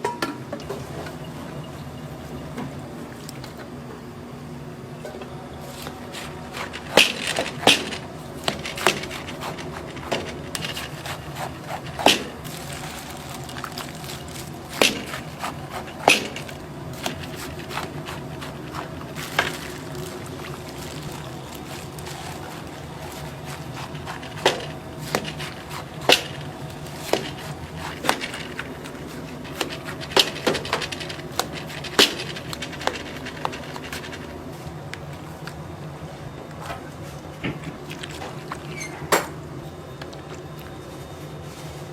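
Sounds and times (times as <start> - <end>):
steady low hum: 0.4 - 41.9
utensils clicking and knocking: 5.8 - 34.4.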